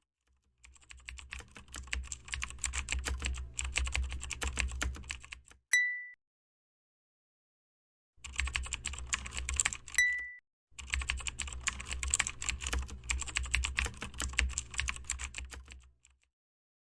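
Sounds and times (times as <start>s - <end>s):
rapid keyboard typing: 0.2s - 5.6s, 8.2s - 16.3s
short bell-like ding: 5.7s - 6.2s, 10.0s - 10.4s.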